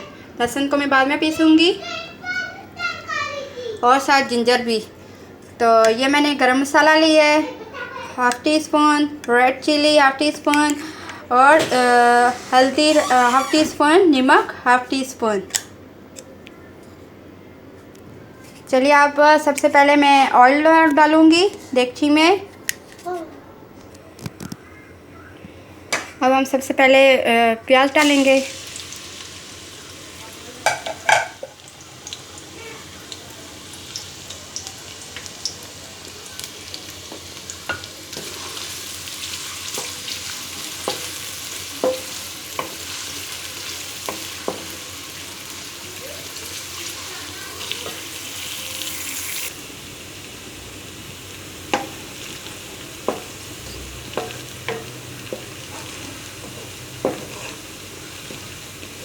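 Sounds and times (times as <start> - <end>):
onions sizzling in hot oil: 11.6 - 13.7, 28.0 - 59.0
spoon knocking against pot: 53.1 - 53.4, 54.1 - 57.5.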